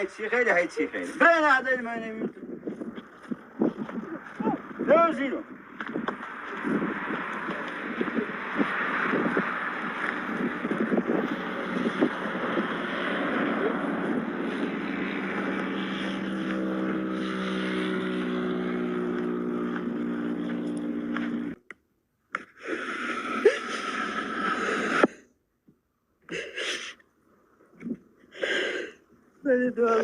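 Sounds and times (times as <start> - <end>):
motor running: 6.5 - 21.6.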